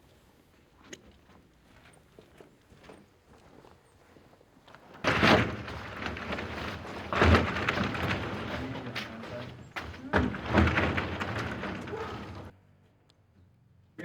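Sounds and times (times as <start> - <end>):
plastic sheet thumps: 5.0 - 12.5
stiff plastic sheet crackling: 5.0 - 12.5.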